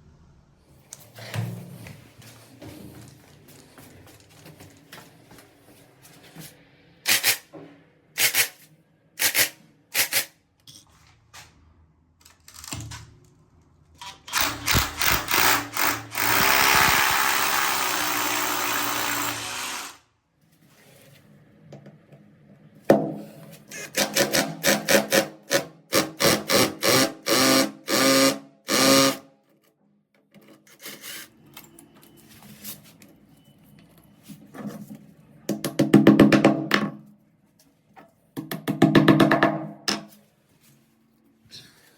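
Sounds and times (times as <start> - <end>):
power drill running: 14.3 - 20.0, 26.0 - 29.2.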